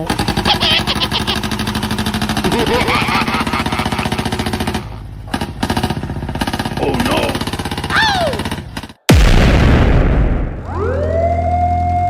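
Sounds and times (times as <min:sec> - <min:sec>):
fast mechanical rattle: 0:00.0 - 0:09.0.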